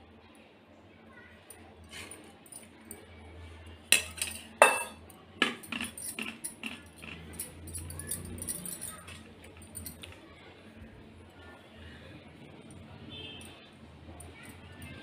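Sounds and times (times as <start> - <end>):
utensils clinking against dishes: 3.9 - 10.2.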